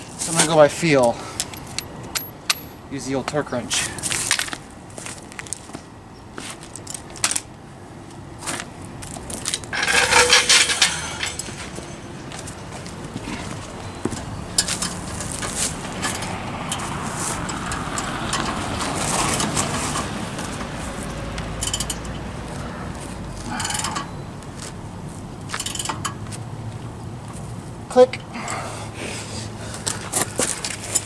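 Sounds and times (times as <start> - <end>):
scraping and rustling: 9.1 - 16.3
metal clicks and knocks: 9.5 - 13.0.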